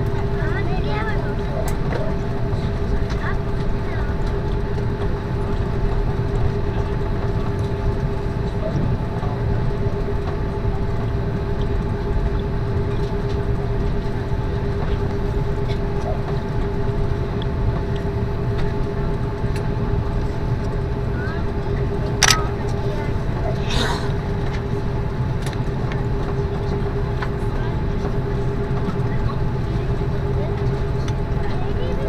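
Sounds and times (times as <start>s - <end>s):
constant cabin hum: 0.0s - 32.0s
low engine rumble: 0.0s - 32.0s.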